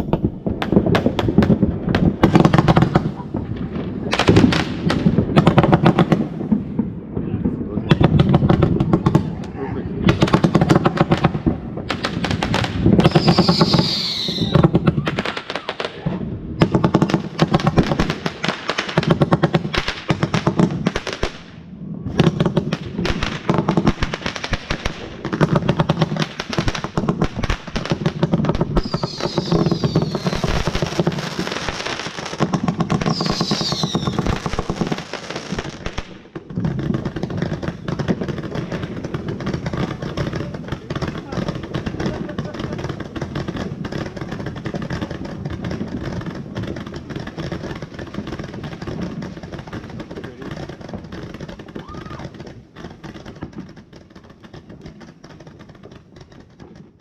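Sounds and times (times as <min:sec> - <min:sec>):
fireworks crackling bangs: 0:00.0 - 0:57.0
falling firework whistle: 0:13.0 - 0:16.2, 0:28.8 - 0:30.6, 0:33.0 - 0:34.3, 0:51.8 - 0:52.4.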